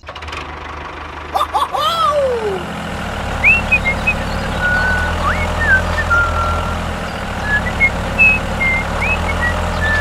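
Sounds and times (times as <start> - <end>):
small vehicle motor hum: 0.0 - 10.0
high chirping whistles: 3.4 - 6.8.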